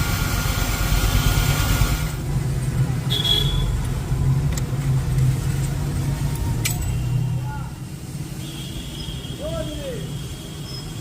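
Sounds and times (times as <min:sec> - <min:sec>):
hiss: 0:00.0 - 0:02.2
vehicle engines rumbling: 0:00.0 - 0:11.0.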